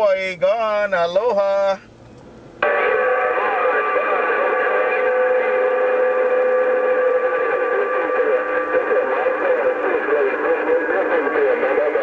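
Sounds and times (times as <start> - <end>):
steady whistling radio tones: 2.6 - 12.0.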